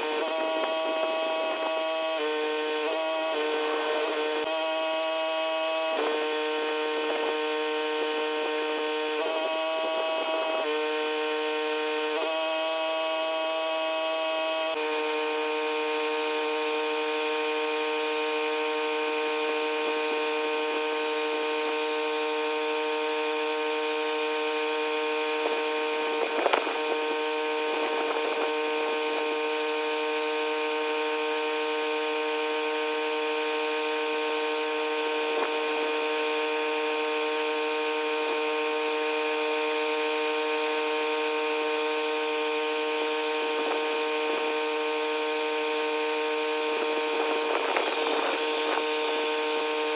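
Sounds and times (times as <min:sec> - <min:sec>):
pressure washer running: 0:00.0 - 0:49.9.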